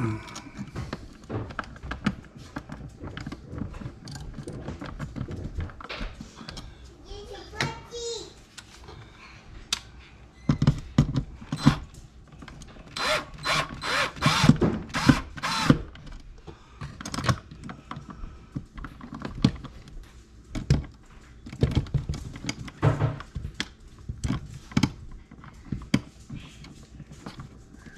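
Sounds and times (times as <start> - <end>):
power drill running: 12.9 - 15.9.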